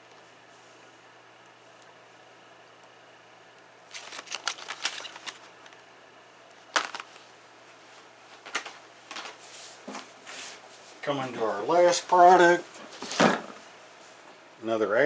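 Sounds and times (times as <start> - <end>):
tools clicking and rattling: 3.9 - 5.8, 6.8 - 7.2.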